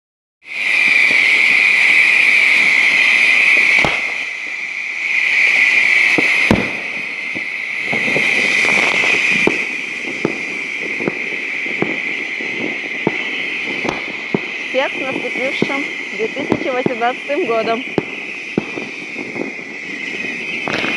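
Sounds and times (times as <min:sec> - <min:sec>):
fireworks bangs: 0:00.5 - 0:20.9
fireworks hiss: 0:00.5 - 0:20.9
crackling pops: 0:03.8 - 0:04.2.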